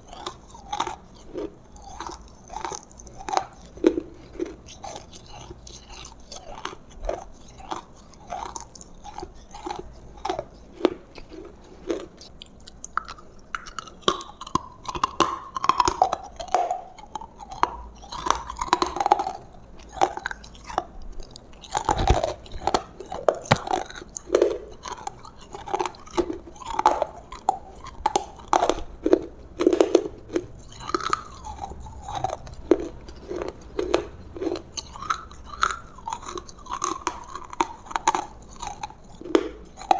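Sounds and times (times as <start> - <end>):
chewing crunchy food: 0.0 - 39.9
wet mouth sounds: 0.0 - 39.9.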